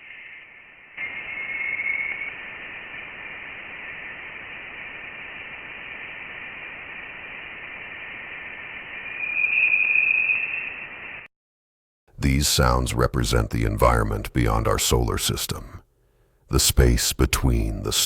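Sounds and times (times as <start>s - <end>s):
high whistling tone: 0.0s - 2.6s, 8.5s - 11.3s
steady hiss: 0.0s - 11.3s.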